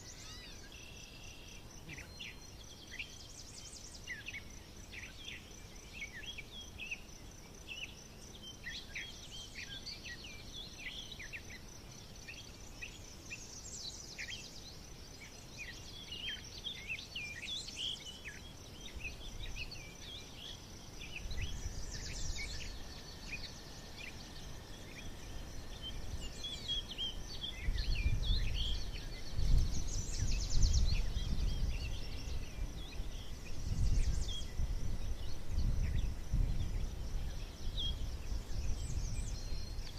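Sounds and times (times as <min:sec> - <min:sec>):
birds chirping and singing: 0:00.0 - 0:39.9
high fast insect trill: 0:10.7 - 0:39.9.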